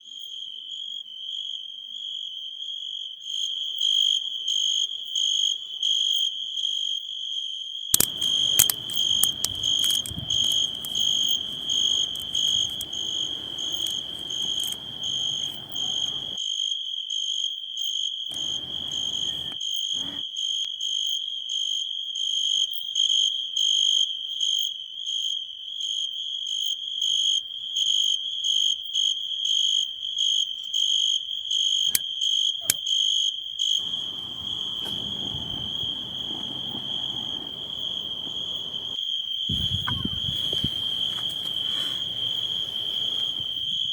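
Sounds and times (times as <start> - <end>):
crickets chirping: 8.0 - 16.4, 18.3 - 20.3, 30.2 - 43.9
rustling with clicks: 8.0 - 16.4, 18.3 - 20.2, 33.8 - 43.9.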